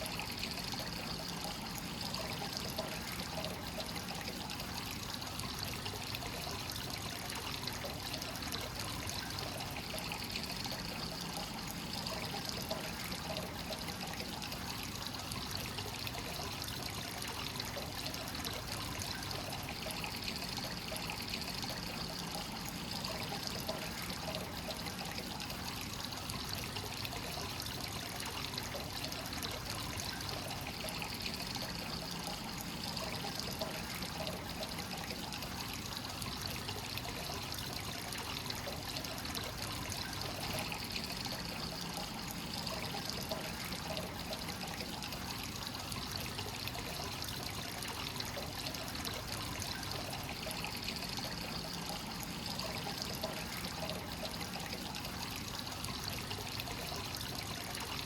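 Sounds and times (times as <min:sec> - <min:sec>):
water trickling and splashing: 0:00.0 - 0:58.0.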